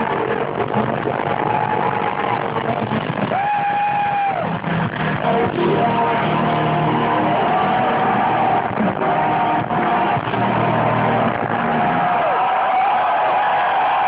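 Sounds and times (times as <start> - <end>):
rock band playing: 0.0 - 12.8.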